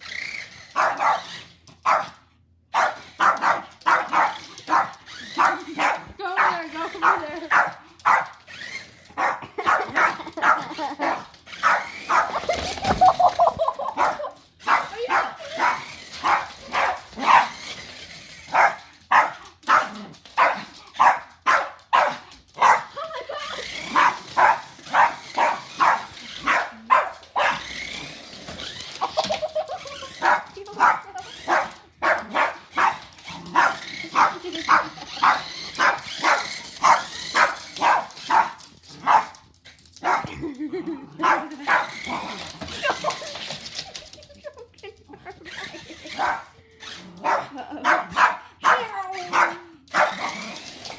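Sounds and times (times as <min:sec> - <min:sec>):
dog barking: 0:00.8 - 0:08.4, 0:09.2 - 0:12.5, 0:13.9 - 0:17.6, 0:18.5 - 0:22.9, 0:23.9 - 0:27.8, 0:30.1 - 0:39.4, 0:40.0 - 0:40.4, 0:41.2 - 0:42.0, 0:46.1 - 0:46.5, 0:47.2 - 0:50.4.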